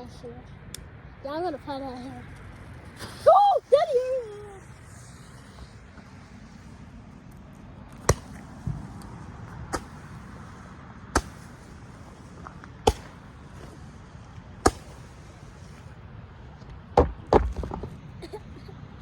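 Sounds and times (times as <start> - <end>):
firework pops: 7.9 - 15.9.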